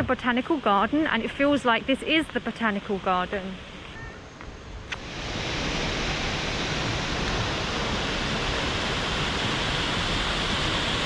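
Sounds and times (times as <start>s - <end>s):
waterfall rushing: 4.9s - 11.0s.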